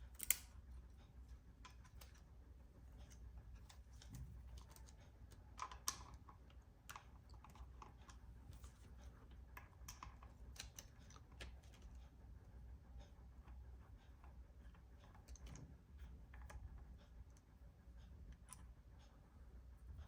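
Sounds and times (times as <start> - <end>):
small clicks of laptop parts: 0.1 - 0.5.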